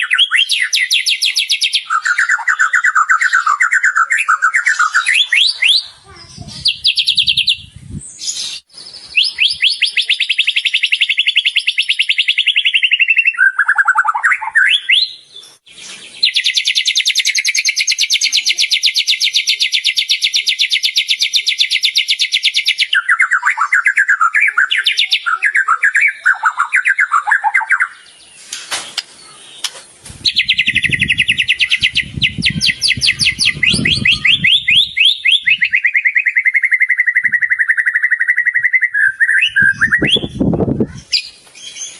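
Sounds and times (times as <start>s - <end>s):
songbird trilling and warbling: 0.0s - 41.9s.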